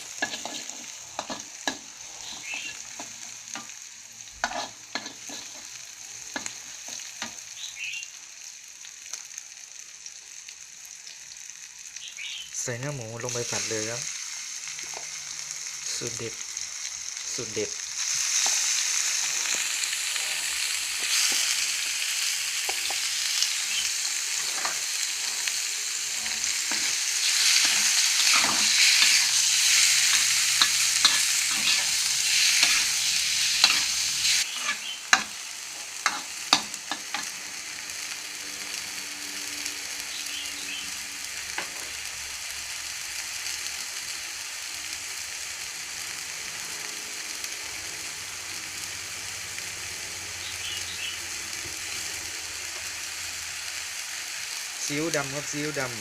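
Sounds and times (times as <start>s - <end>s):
spatula stirring: 0.0s - 3.7s, 4.4s - 5.7s, 26.1s - 35.3s
pork sizzling in hot pan: 0.0s - 56.0s
utensil clicking on pan: 26.2s - 33.0s, 33.6s - 34.0s, 36.0s - 37.3s.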